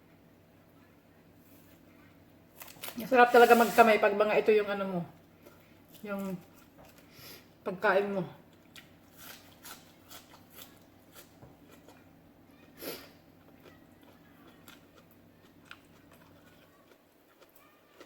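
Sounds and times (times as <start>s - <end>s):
chewing and eating: 8.5s - 18.0s.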